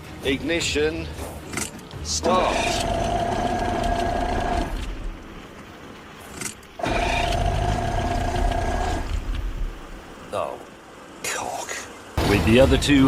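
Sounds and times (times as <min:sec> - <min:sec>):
outboard motor starting: 0:02.4 - 0:05.2, 0:06.3 - 0:09.8.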